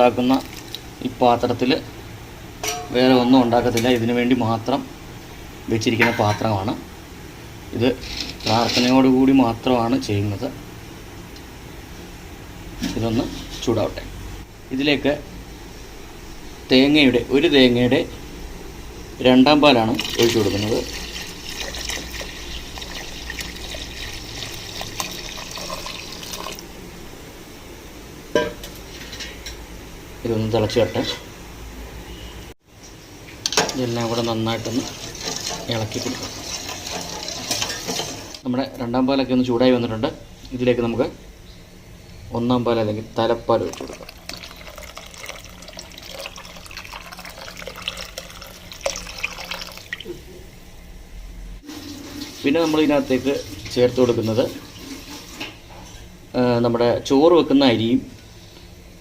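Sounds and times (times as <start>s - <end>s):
liquid pouring into pot: 19.9s - 26.8s, 34.0s - 38.4s, 43.6s - 50.2s.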